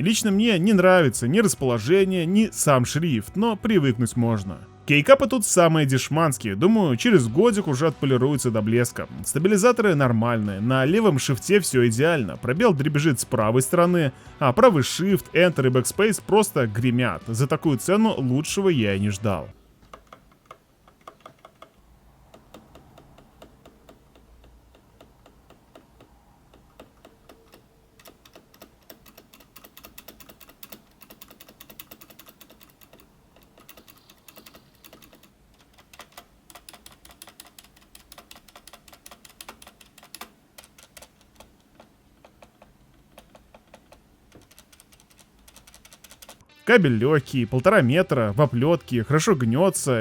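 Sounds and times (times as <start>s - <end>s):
mechanical keyboard typing: 19.9s - 46.4s.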